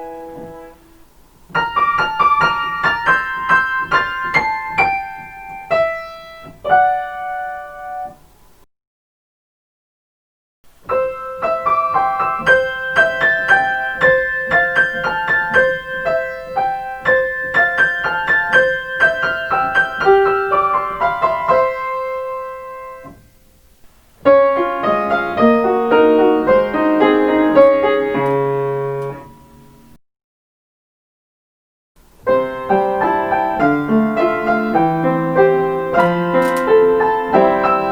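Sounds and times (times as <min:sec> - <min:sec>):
piano playing chime melodies: 0:11.0 - 0:23.1.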